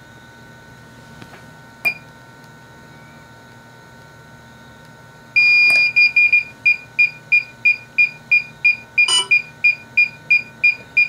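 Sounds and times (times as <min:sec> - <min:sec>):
drone electronic beeping: 0:05.4 - 0:06.5, 0:09.0 - 0:10.4.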